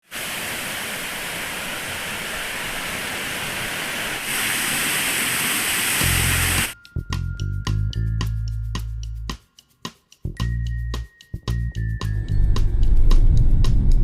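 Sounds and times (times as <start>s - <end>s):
waterfall rushing: 0.0s - 6.8s
low steady tone: 11.8s - 14.0s.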